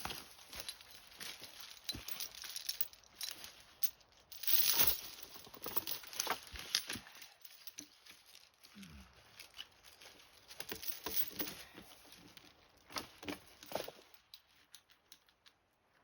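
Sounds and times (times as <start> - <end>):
footsteps in dry leaves: 0.0 - 6.9.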